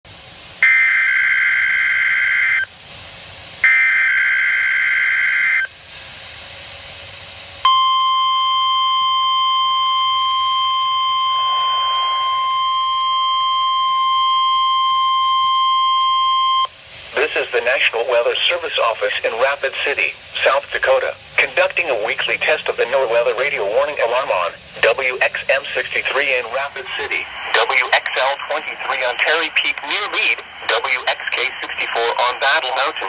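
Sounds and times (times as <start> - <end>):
steady warning alarm tone: 0.6 - 2.7, 3.6 - 5.8, 7.6 - 16.8.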